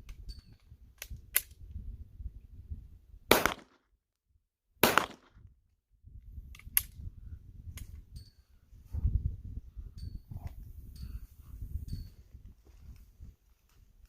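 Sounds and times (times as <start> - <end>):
pistol shots: 3.3 - 3.8, 4.8 - 5.3.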